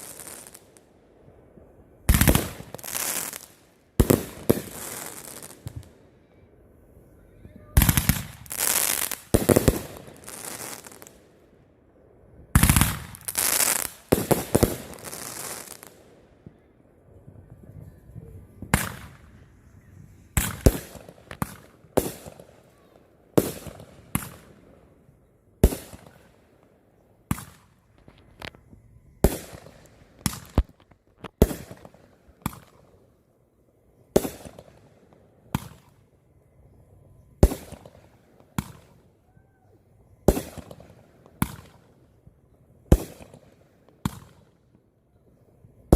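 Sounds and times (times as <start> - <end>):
fireworks crackling bangs: 0.0 - 0.7, 2.1 - 5.9, 7.6 - 11.2, 12.5 - 16.6, 18.5 - 19.6, 20.2 - 24.7, 27.3 - 32.8, 40.3 - 41.9
fireworks sharp bangs: 2.1 - 6.0, 7.5 - 11.2, 12.5 - 16.6, 18.5 - 24.7, 25.6 - 26.4, 27.3 - 32.9, 34.1 - 34.8, 35.5 - 36.0, 37.4 - 39.0, 40.2 - 41.9, 42.9 - 44.5.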